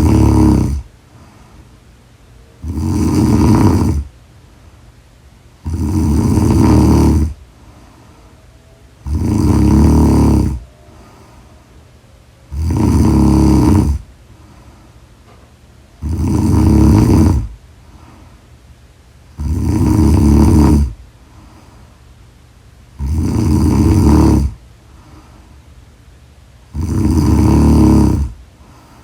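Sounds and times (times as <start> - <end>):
loud snoring: 0.0 - 0.9, 2.6 - 4.1, 5.6 - 7.4, 9.0 - 11.4, 12.5 - 14.1, 16.0 - 18.1, 19.3 - 21.0, 22.9 - 24.6, 26.7 - 28.4.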